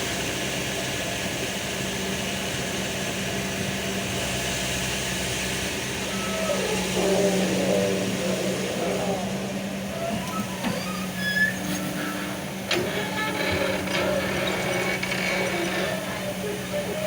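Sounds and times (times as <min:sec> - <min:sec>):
diesel engine running: 0:00.0 - 0:17.0
hydraulic whine: 0:05.6 - 0:17.0.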